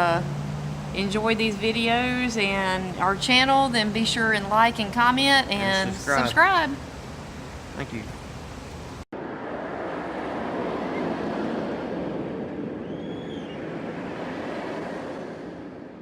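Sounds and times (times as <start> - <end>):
steady rushing noise: 8.7 - 16.0.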